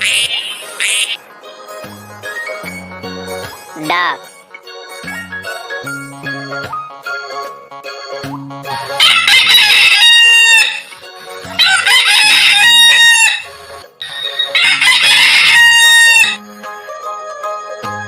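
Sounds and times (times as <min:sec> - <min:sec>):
light jingly music: 0:00.6 - 0:18.0
rooster crowing: 0:09.0 - 0:11.0, 0:11.6 - 0:16.4.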